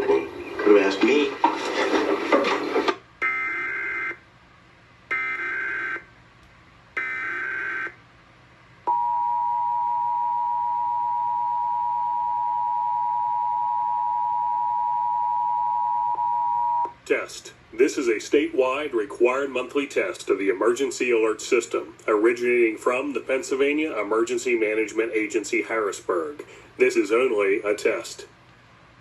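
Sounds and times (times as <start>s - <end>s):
two-tone attention signal: 8.9s - 16.9s.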